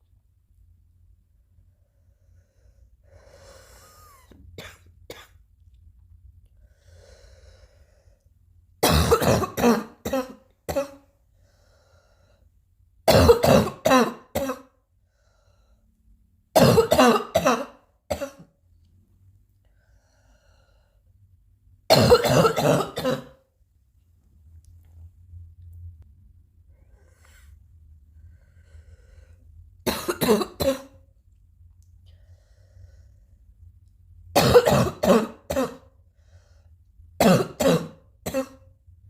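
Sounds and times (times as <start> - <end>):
faint breathing: 1.8 - 4.3, 6.5 - 8.4, 11.3 - 12.6, 15.0 - 16.0, 19.6 - 21.2, 26.7 - 29.8, 32.0 - 33.6, 36.0 - 36.9
harsh coughing: 4.0 - 5.4, 8.8 - 11.1, 13.1 - 14.8, 16.6 - 18.5, 21.9 - 23.4, 29.8 - 31.0, 34.4 - 35.9, 37.2 - 38.7.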